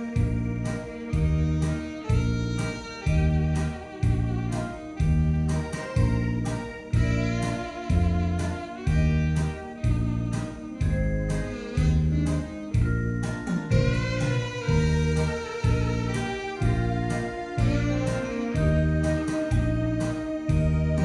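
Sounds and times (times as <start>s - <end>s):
backing track with heavy beat: 0.0s - 21.0s
tenor saxophone melody: 0.0s - 21.0s.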